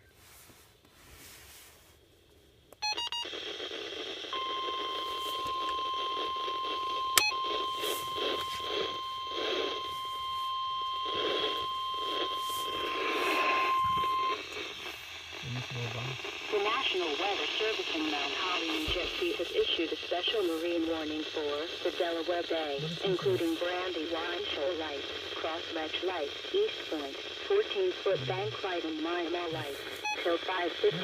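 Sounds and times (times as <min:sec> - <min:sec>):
radio static: 0:02.8 - 0:31.0
steady alarm tone: 0:04.3 - 0:23.9.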